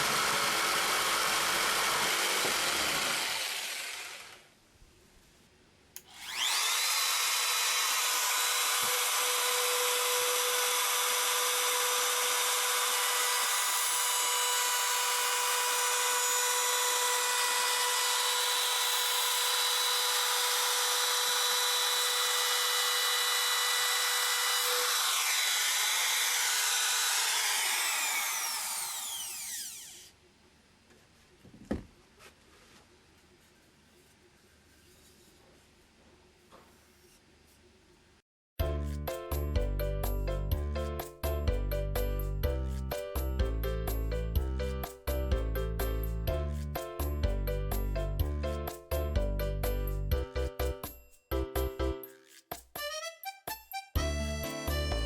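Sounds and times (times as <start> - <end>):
power tool motor whining: 0.0 - 4.5, 6.1 - 30.1.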